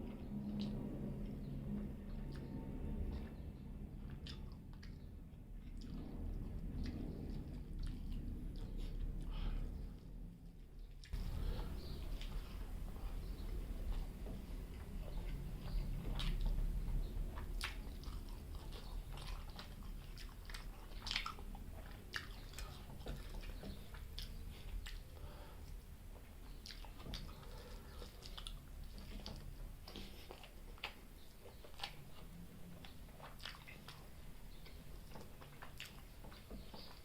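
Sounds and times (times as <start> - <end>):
person chewing food: 0.0 - 37.0.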